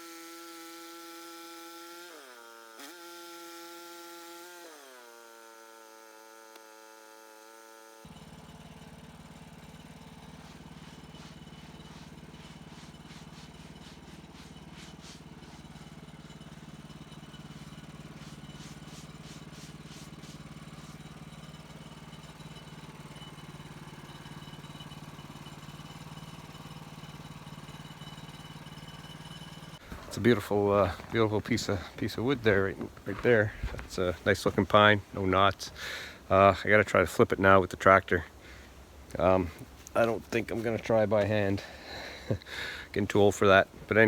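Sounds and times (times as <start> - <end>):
sawmill engine idling: 4.3 - 36.4, 38.4 - 44.0.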